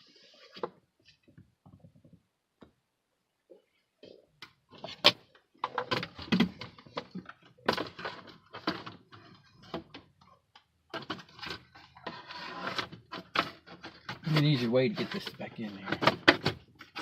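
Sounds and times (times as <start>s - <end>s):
hard plastic parts clicking and rustling: 4.0s - 17.0s.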